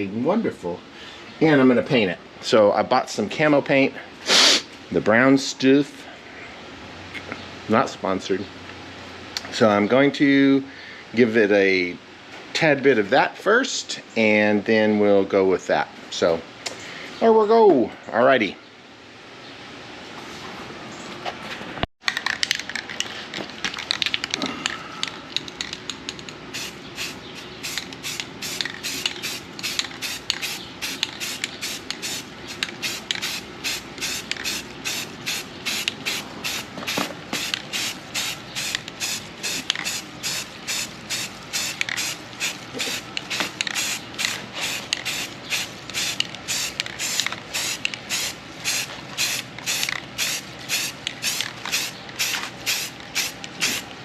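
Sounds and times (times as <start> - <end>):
spray can hissing: 26.5 - 53.9.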